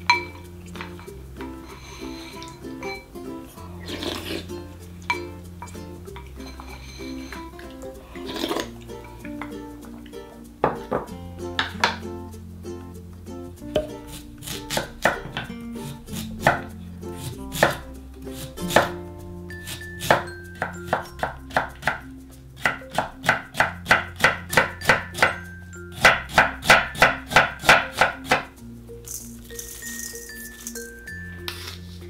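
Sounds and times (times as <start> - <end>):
light background music: 0.0 - 32.0
knife chopping on cutting board: 13.8 - 15.5, 16.2 - 17.8, 18.4 - 19.0, 22.6 - 25.4, 26.0 - 28.5.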